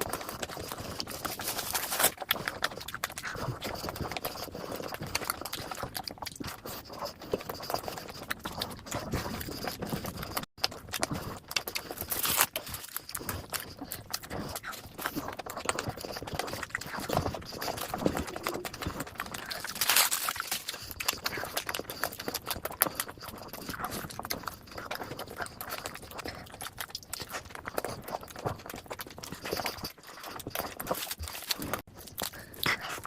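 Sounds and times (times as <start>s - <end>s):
chewing and mouth smacks: 0.0s - 33.0s.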